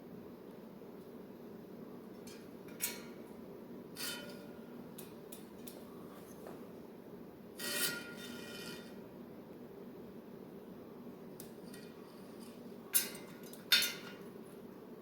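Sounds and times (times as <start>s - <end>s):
steady low hum: 0.0s - 15.0s
bicycle wheel scraping: 7.6s - 9.0s.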